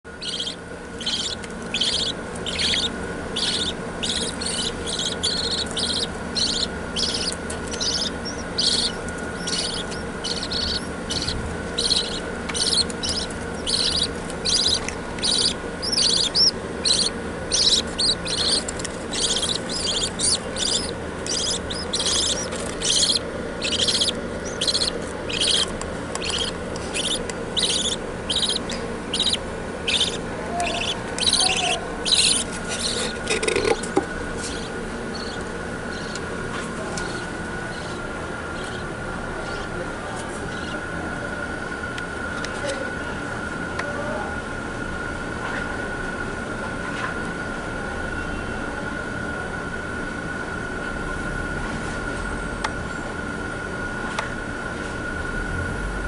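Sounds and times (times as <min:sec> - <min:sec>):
steady low hum: 0:00.0 - 0:56.0
budgerigars chirping and chattering: 0:00.1 - 0:36.2, 0:36.9 - 0:39.7, 0:40.5 - 0:40.8.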